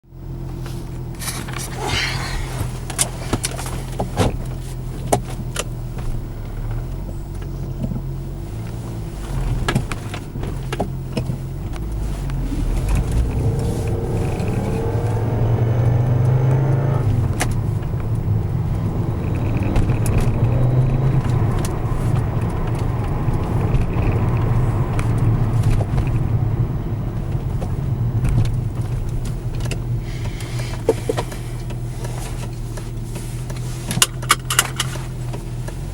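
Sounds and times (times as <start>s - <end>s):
car engine running: 0.0s - 35.9s
gearbox whining and grinding: 0.0s - 35.9s.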